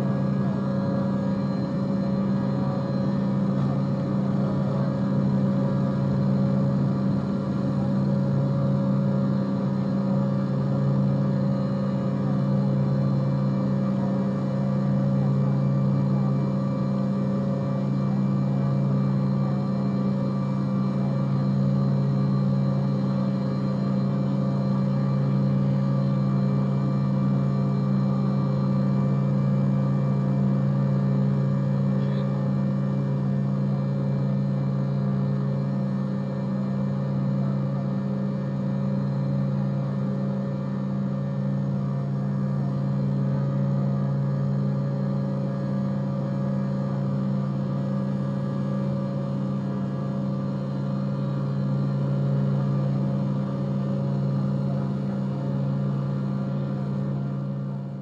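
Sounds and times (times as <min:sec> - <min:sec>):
jet engine hum: 0:00.0 - 0:15.3
jet engines and airflow drone: 0:00.0 - 0:58.0.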